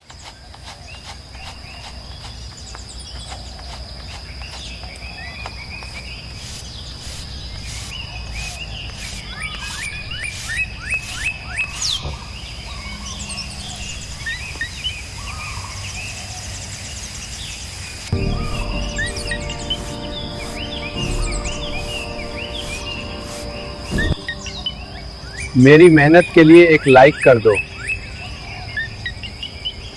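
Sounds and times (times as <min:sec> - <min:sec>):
small birds chirping: 0:00.0 - 0:29.9
high-pitched whine: 0:18.1 - 0:27.0.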